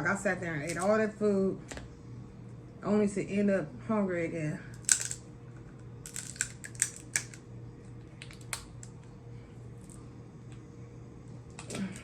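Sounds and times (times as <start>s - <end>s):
crab shells cracking: 4.7s - 5.2s, 6.0s - 7.5s, 8.2s - 9.0s.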